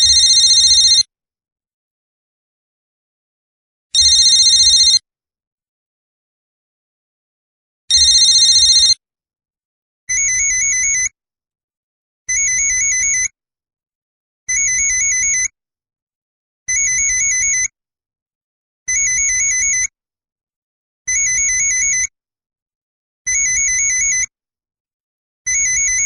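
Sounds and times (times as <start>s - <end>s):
electronic telephone ringing: 0.0s - 1.1s, 4.0s - 5.0s, 7.9s - 9.0s.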